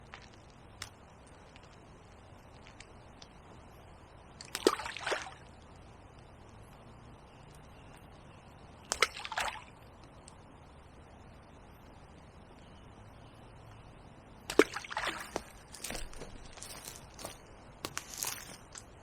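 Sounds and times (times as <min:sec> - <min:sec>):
splashing and knocking: 0:04.5 - 0:05.4, 0:14.5 - 0:18.7.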